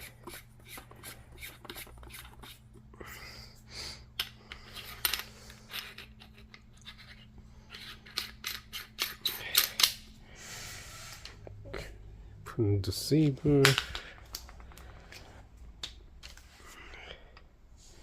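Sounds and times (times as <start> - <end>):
small parts clicking and scraping: 4.2 - 10.1, 13.6 - 15.3.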